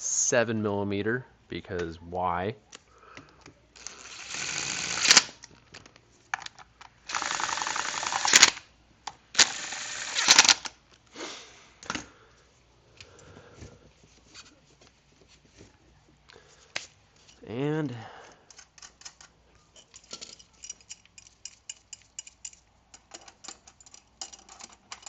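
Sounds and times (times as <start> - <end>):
power driver rattling: 6.4 - 8.6.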